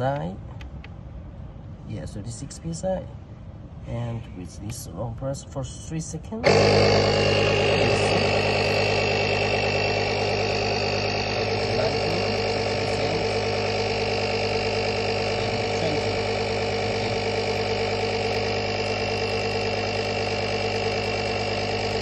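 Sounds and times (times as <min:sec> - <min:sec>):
small air compressor running: 0:06.4 - 0:22.0.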